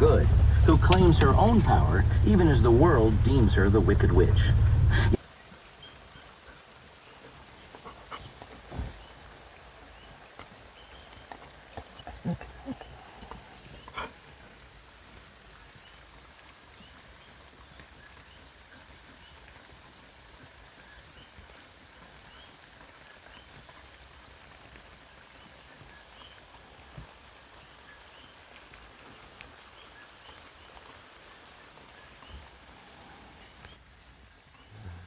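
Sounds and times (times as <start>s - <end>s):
drips clicking: 0.0s - 5.2s
steady rain: 0.0s - 35.0s.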